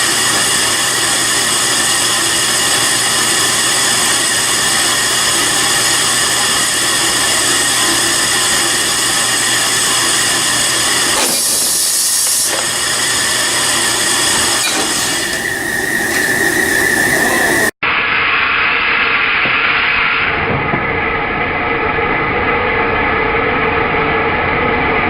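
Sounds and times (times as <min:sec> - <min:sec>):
high hiss burst: 0:00.0 - 0:17.7
industrial machinery whining: 0:00.0 - 0:25.0.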